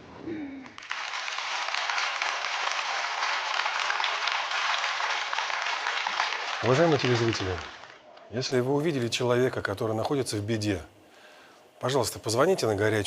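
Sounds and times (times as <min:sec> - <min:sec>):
audience applauding: 0:00.6 - 0:08.3.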